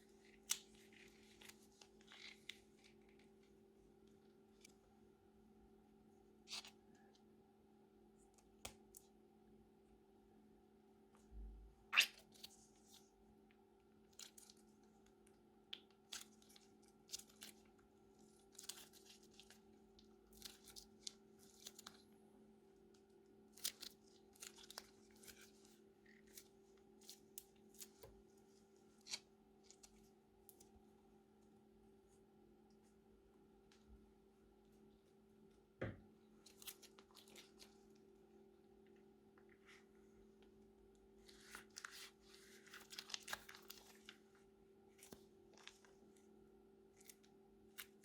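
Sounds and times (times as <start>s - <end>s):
faint steady hum: 0.0s - 48.0s
crunchy slime crackling: 41.3s - 44.2s.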